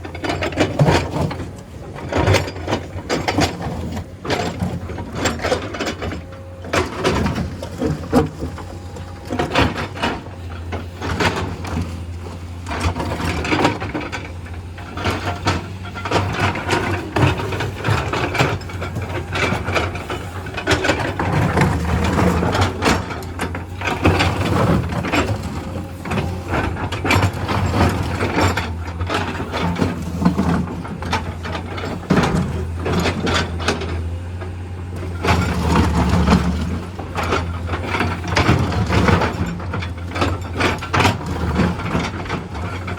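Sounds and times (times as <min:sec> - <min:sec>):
diesel engine running under load: 0:00.0 - 0:42.9
excavator digging clanks: 0:00.0 - 0:42.9.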